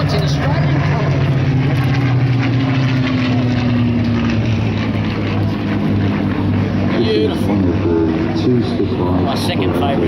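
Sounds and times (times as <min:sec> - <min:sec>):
propeller plane engine flying by: 0:00.0 - 0:10.0.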